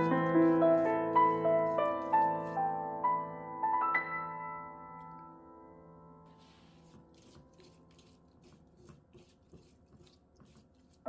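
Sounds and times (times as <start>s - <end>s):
soft piano chord ringing: 2.7s - 6.3s.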